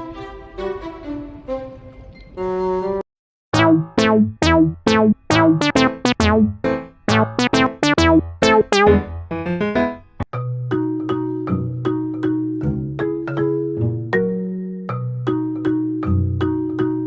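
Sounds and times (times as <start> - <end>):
electronic keyboard melody: 3.6 - 10.0.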